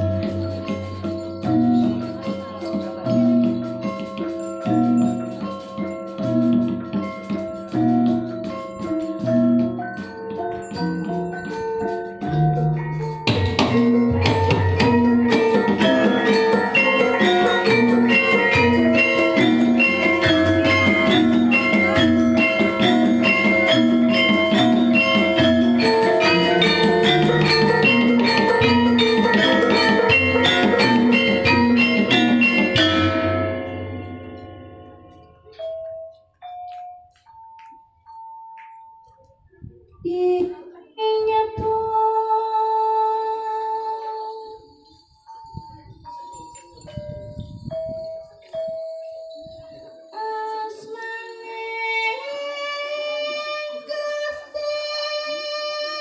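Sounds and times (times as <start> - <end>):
drums: 0.0 - 34.5
metallophones playing melody: 0.0 - 39.5, 43.5 - 54.3
metallic mallet percussion: 0.0 - 40.7, 42.6 - 56.0.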